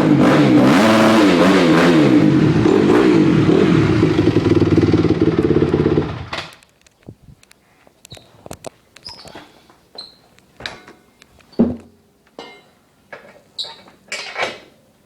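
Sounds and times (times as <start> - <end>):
motorcycle engine revving: 0.0 - 6.4.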